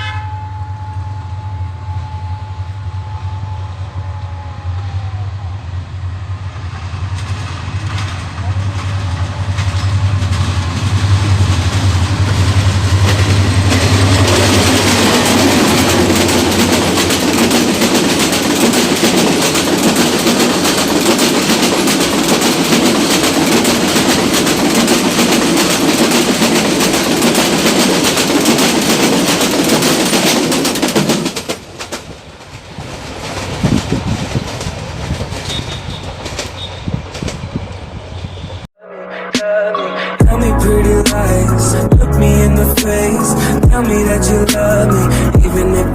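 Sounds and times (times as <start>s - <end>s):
train engine hum: 0.0s - 38.7s
train rumble: 0.0s - 38.7s, 40.2s - 45.9s
carriages rattling over rail joints: 7.1s - 38.6s.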